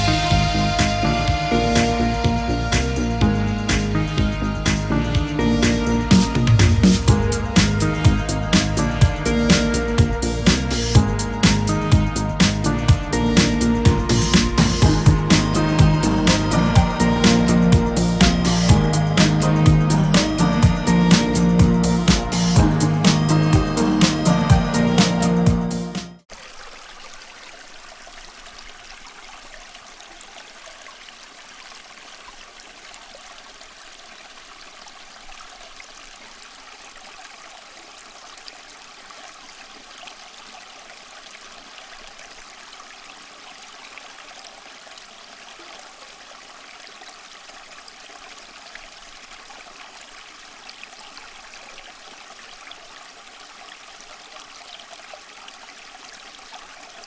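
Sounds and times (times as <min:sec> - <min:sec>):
water trickling down fountain: 0:26.3 - 0:57.0.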